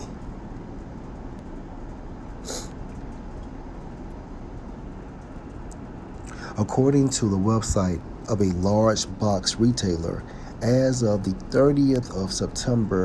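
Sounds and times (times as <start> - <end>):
low rumbling background noise: 0.0 - 13.0
short hiss: 2.4 - 2.7.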